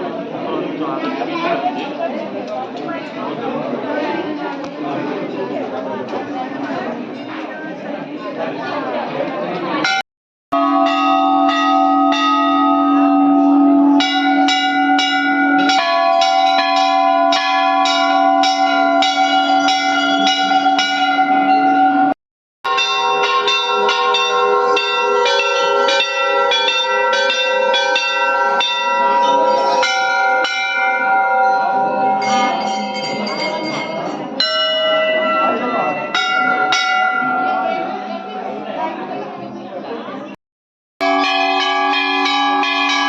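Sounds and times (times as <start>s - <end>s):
bells ringing: 9.8s - 39.0s, 41.0s - 43.0s.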